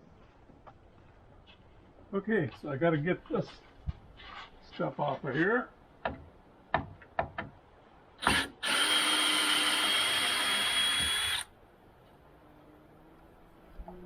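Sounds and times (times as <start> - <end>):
power drill spinning: 8.2 - 11.5.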